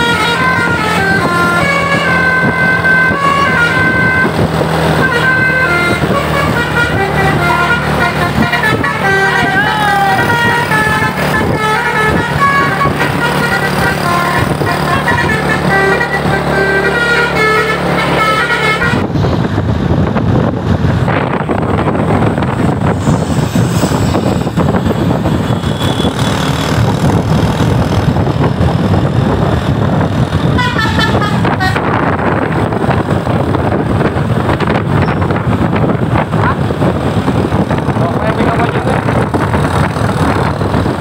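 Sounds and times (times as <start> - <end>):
bus musical horn melody: 0.0 - 19.2, 30.4 - 32.8
heavy bus engine: 0.0 - 41.0
road noise: 0.0 - 41.0.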